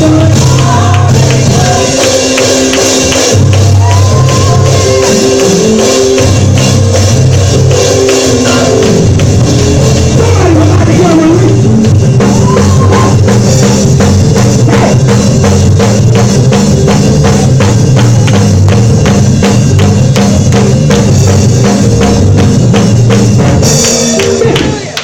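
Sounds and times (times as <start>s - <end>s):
bass line: 0.0s - 25.0s
drum kit and tambourine beat: 0.0s - 25.0s.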